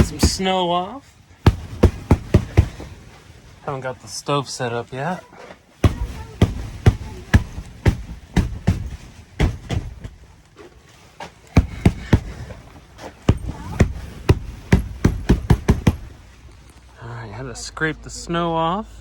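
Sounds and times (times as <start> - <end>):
dull thumps on tent canvas: 0.0 - 0.8, 1.4 - 3.5, 5.8 - 16.4.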